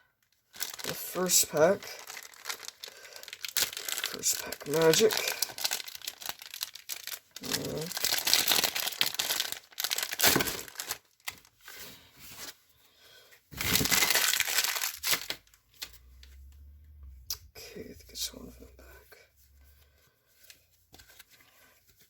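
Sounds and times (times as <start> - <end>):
foil wrapper crinkling and tearing: 0.4 - 11.6, 13.6 - 15.9.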